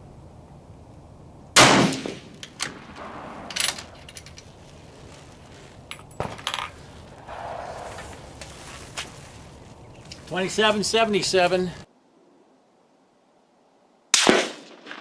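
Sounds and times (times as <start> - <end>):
rifle shot with echo: 1.6 - 4.0, 7.2 - 8.5, 14.2 - 15.0
metallic clicks and clacks: 3.4 - 4.6.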